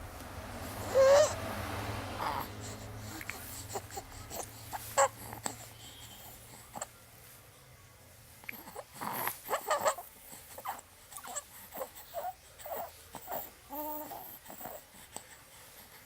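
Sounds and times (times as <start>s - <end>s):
infant cooing: 0.8s - 1.4s, 2.2s - 6.9s, 8.4s - 14.8s
infant grunting and whimpering: 2.2s - 6.9s, 8.5s - 14.9s.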